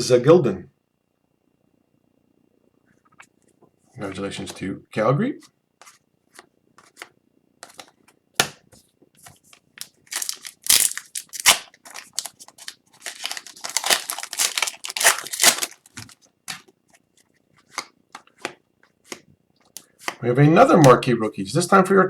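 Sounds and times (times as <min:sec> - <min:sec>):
foil wrapper tearing and crinkling: 0:09.8 - 0:16.2
cards clicking: 0:09.8 - 0:16.7.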